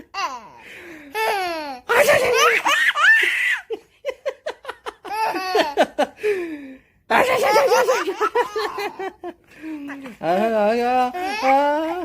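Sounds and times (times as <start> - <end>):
baby laughing: 0.0 - 0.6, 1.2 - 3.8, 4.9 - 6.0, 7.1 - 10.5, 11.1 - 12.0.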